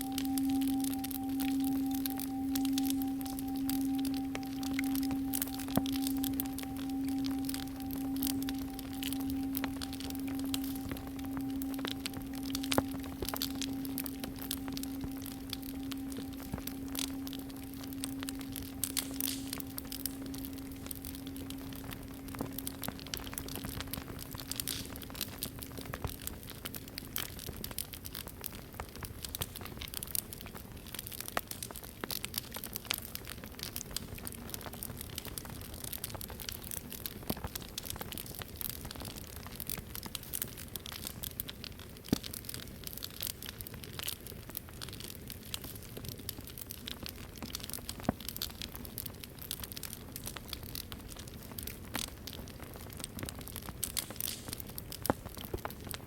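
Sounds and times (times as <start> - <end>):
singing bowl hum: 0.0 - 26.0
wood fire crackling and popping: 0.0 - 27.9, 37.5 - 56.0.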